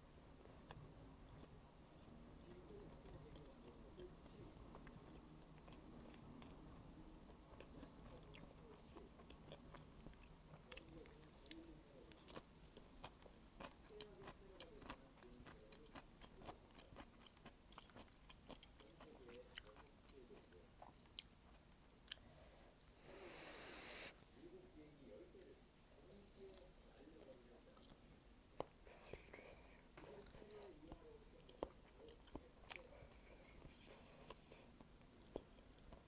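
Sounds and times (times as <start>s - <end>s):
person chewing food: 0.0s - 24.2s, 25.3s - 36.0s.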